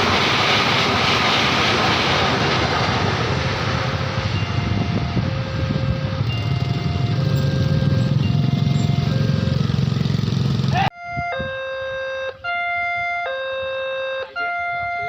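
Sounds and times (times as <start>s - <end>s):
low engine rumble: 0.0s - 11.2s
two-tone warning siren: 1.7s - 15.0s.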